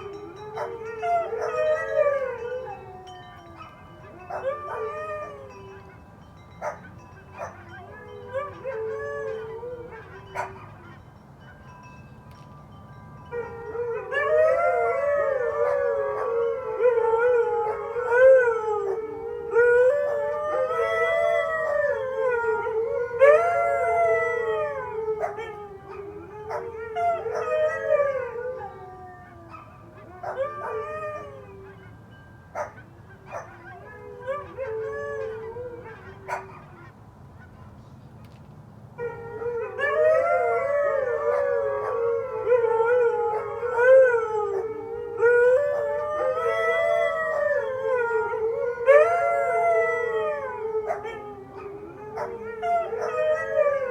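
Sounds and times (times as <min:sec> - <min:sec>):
huskies howling together: 0:00.0 - 0:05.9, 0:13.3 - 0:31.9, 0:39.0 - 0:53.9
dogs yipping: 0:06.6 - 0:08.6, 0:10.0 - 0:11.1.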